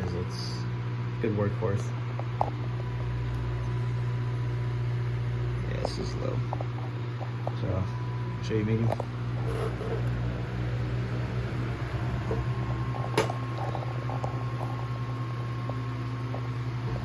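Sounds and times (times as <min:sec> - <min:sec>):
table fan motor humming: 0:00.0 - 0:17.0.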